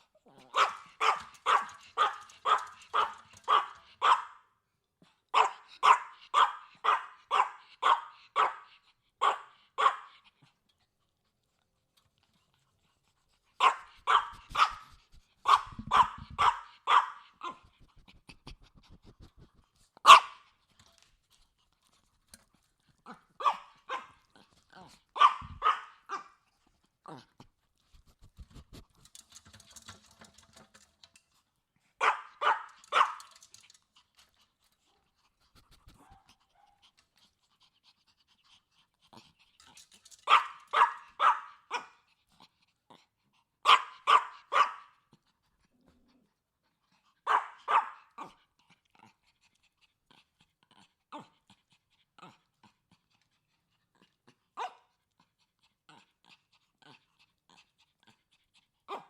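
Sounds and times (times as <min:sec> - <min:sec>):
small dog yapping: 0:00.3 - 0:04.4, 0:05.4 - 0:10.1, 0:13.6 - 0:17.7, 0:20.0 - 0:20.4, 0:23.3 - 0:26.4, 0:32.0 - 0:33.7, 0:40.1 - 0:42.0, 0:43.6 - 0:44.9, 0:47.3 - 0:48.4
dog panting: 0:07.6 - 0:25.7, 0:33.3 - 0:40.2, 0:48.0 - 0:59.0.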